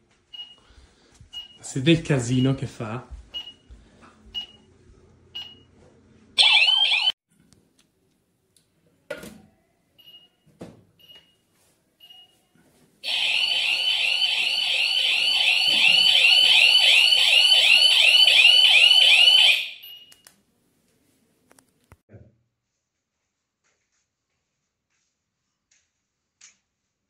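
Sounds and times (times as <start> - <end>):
alarm siren warbling: 6.4 - 7.2, 13.1 - 19.8.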